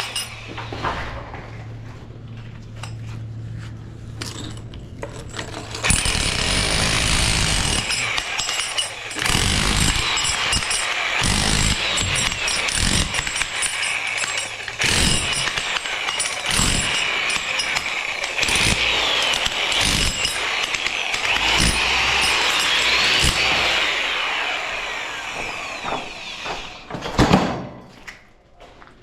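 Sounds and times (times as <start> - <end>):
power tool running: 5.2 - 27.0.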